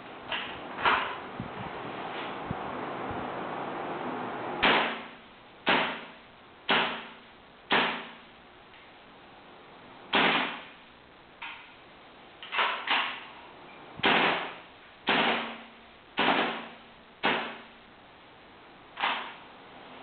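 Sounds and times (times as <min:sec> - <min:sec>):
airsoft rifle shots: 0:04.6 - 0:08.3, 0:10.1 - 0:10.8, 0:14.0 - 0:17.8, 0:19.0 - 0:19.4.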